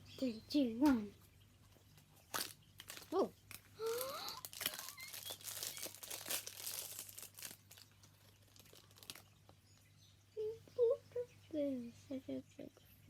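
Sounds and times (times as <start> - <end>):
plastic packaging crinkling and tearing: 2.2 - 9.6.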